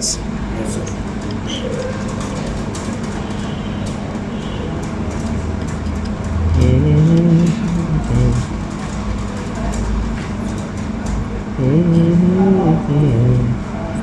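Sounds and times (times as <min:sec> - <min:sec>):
person speaking: 0:06.4 - 0:08.7, 0:11.6 - 0:14.0.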